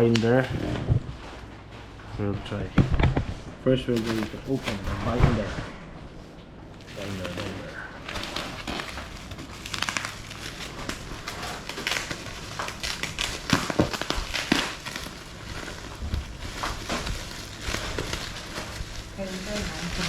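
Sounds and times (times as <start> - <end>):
packaging crumpled and torn: 3.9 - 5.2, 6.8 - 20.0.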